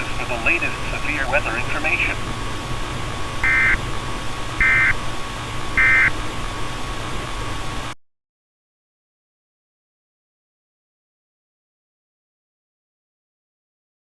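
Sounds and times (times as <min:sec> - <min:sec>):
broadcast hiss: 0:00.0 - 0:08.0
faint constant tone: 0:00.0 - 0:08.0.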